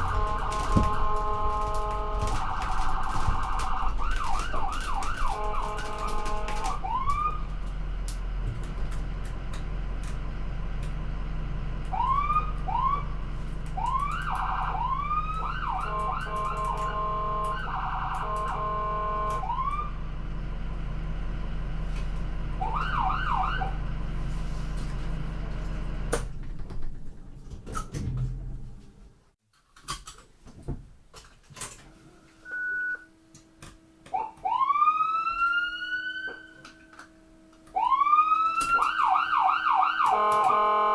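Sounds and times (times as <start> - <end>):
ambulance siren: 0.0 - 8.0, 11.9 - 20.6, 22.5 - 24.2, 34.1 - 40.9
vehicle engine drone: 0.0 - 28.9, 36.3 - 40.9.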